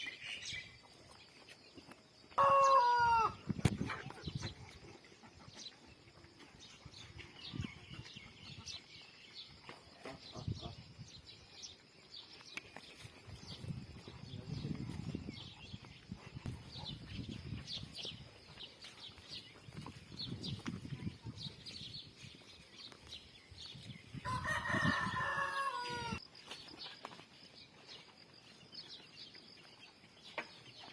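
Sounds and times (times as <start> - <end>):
rooster crowing: 2.4 - 3.4, 24.2 - 26.2.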